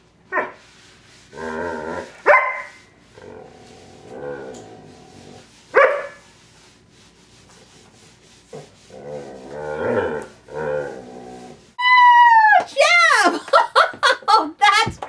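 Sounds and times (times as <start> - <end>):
dog bark-like call: 2.3 - 2.8
dog wavering drawn-out vocal: 8.5 - 11.7.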